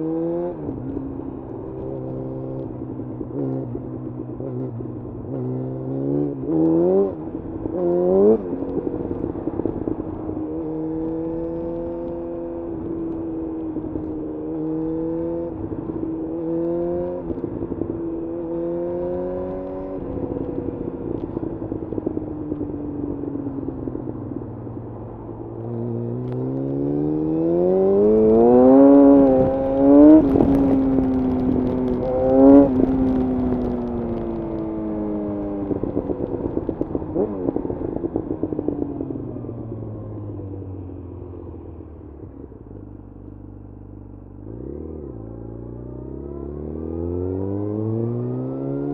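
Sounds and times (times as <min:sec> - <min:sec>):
motorcycle engine revving: 0:00.0 - 0:13.4, 0:14.0 - 0:24.6, 0:25.5 - 0:42.6, 0:43.2 - 0:48.9.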